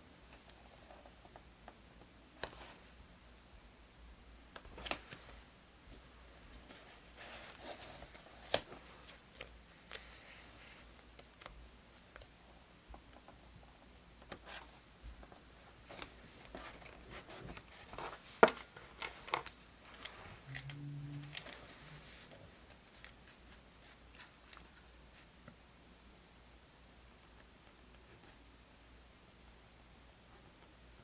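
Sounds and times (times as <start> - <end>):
low hum: 20.2 - 22.6.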